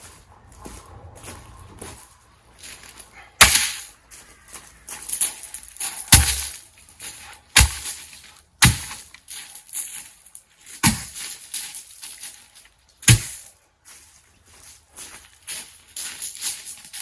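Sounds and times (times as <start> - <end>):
wood being chopped: 3.4 - 3.8, 6.1 - 6.5, 7.6 - 8.0, 8.6 - 9.1, 10.8 - 11.2, 13.1 - 13.4.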